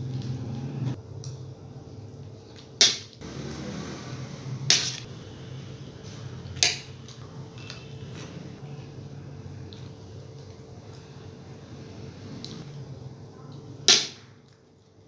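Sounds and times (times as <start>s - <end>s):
steady low hum: 3.2s - 15.0s.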